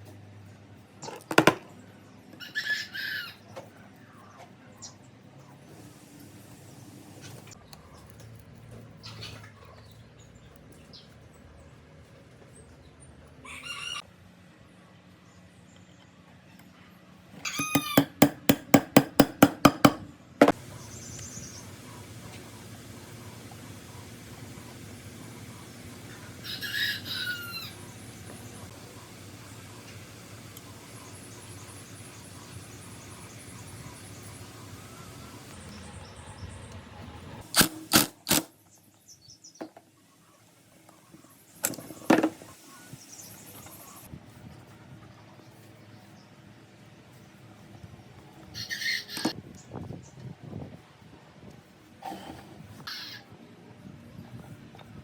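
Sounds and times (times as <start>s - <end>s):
sharp knocks: 17.6s - 20.6s.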